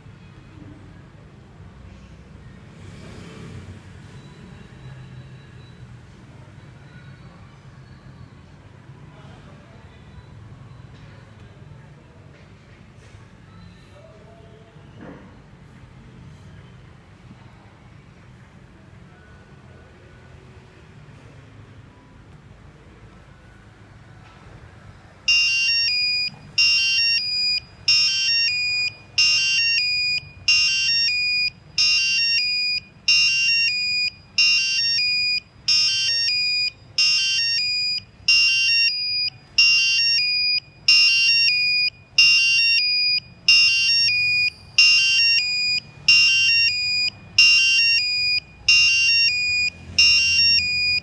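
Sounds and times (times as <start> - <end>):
shrill electronic buzzer tone: 25.3 - 51.0.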